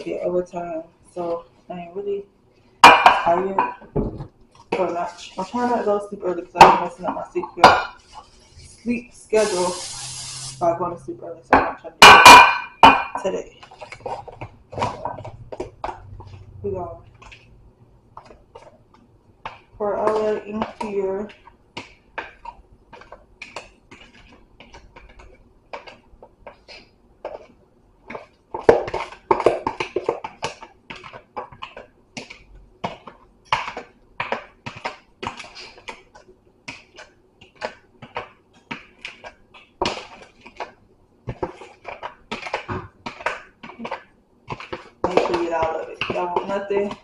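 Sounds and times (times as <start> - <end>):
spoon scraping mixing bowl: 7.0 - 10.8.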